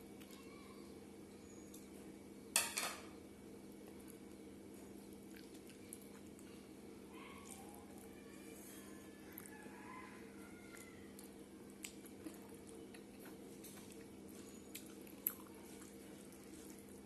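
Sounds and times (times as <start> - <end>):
small clicks of eating: 0.2 - 0.6, 3.7 - 9.7, 10.4 - 17.0.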